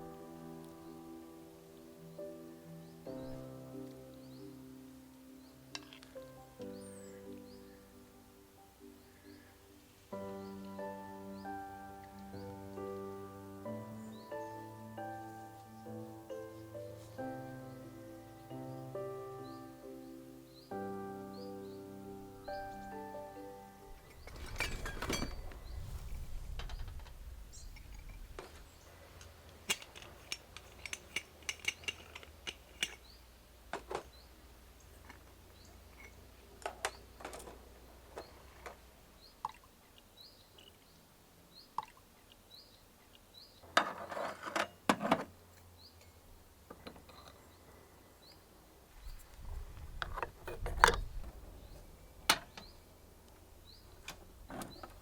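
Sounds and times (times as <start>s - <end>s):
cookware clinking and clattering: 24.0s - 25.6s, 29.7s - 33.1s.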